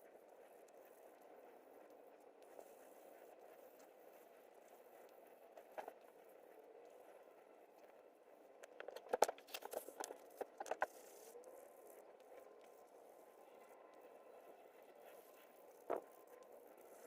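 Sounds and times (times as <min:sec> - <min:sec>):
small clicks and taps: 0:08.6 - 0:11.0.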